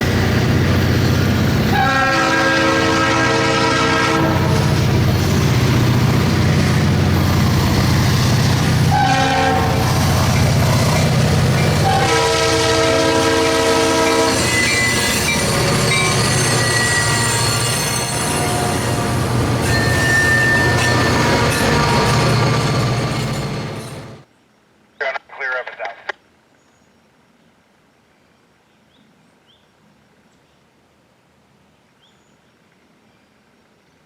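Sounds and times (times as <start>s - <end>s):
passing train rumble: 0.0s - 24.3s
locomotive air horn blasts: 1.7s - 4.7s, 8.9s - 10.1s, 11.8s - 15.2s.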